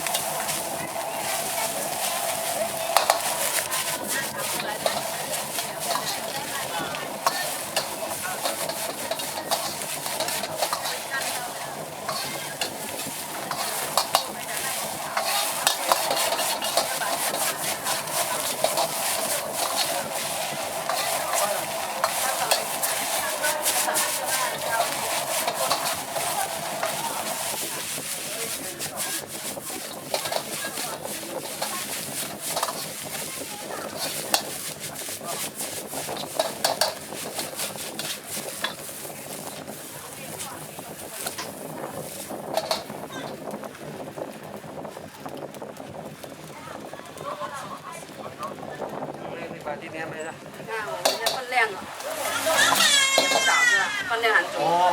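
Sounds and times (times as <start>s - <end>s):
spatula clinking on wok: 0.0s - 39.6s, 51.0s - 51.5s, 52.2s - 54.0s
food sizzling in a wok: 0.0s - 49.1s, 50.4s - 54.9s.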